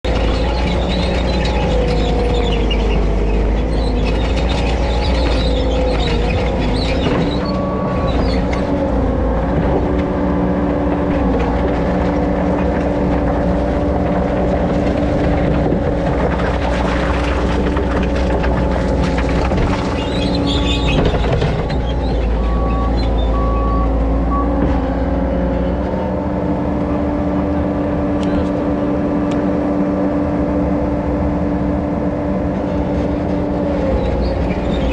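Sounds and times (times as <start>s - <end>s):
diesel engine running: 0.0s - 34.9s
machine clattering and rattling: 0.1s - 23.3s.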